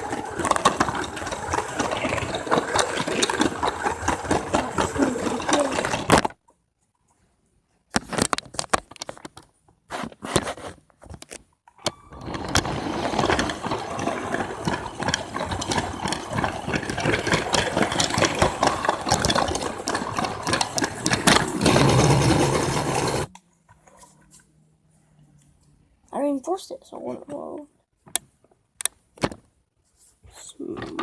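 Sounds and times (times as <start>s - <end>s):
toy train whirring rattle: 0.0s - 6.2s, 11.9s - 23.3s
plastic clicks and clatters: 0.0s - 6.6s, 7.9s - 23.5s, 28.1s - 29.5s, 30.7s - 31.0s.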